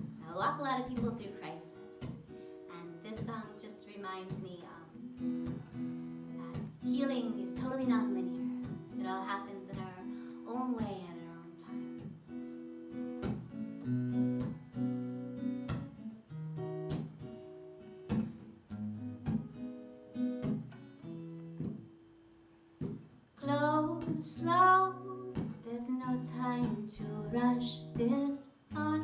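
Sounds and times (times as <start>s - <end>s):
acoustic guitar picking and strumming: 0.0s - 29.0s
woman singing: 0.2s - 5.0s, 6.4s - 11.8s, 23.4s - 29.0s.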